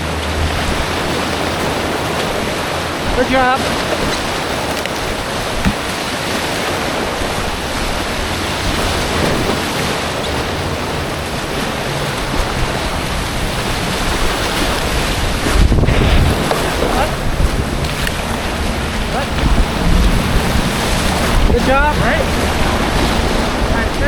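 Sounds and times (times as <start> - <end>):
whitewater rushing: 0.0 - 24.0
low rumble: 11.0 - 24.0.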